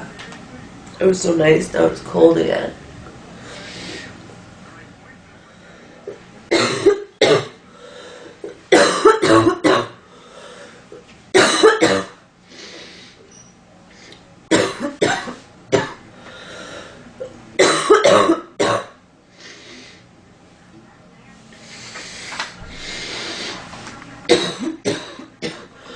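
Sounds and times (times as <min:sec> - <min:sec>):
breathing: 0:03.4 - 0:04.2, 0:05.5 - 0:06.0, 0:07.7 - 0:08.4, 0:10.0 - 0:10.9, 0:12.5 - 0:13.3, 0:16.2 - 0:17.1, 0:19.3 - 0:20.1, 0:21.6 - 0:23.7
woman coughing: 0:06.5 - 0:07.6, 0:08.7 - 0:10.0, 0:11.4 - 0:12.2, 0:14.5 - 0:16.0, 0:17.6 - 0:19.0, 0:24.3 - 0:25.7.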